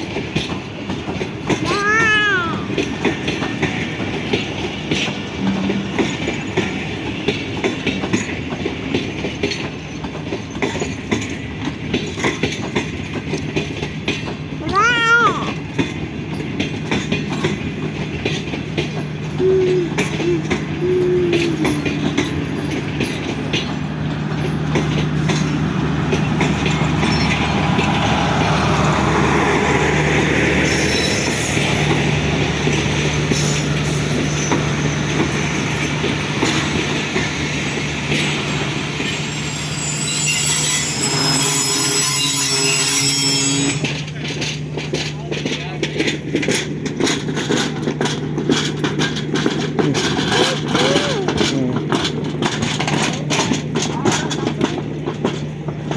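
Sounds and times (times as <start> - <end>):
train coaches rumbling past: 0.0 - 55.9
wheels clicking over rail joints: 0.0 - 55.9
high-pitched wheel squeal: 30.6 - 36.6, 38.7 - 44.0.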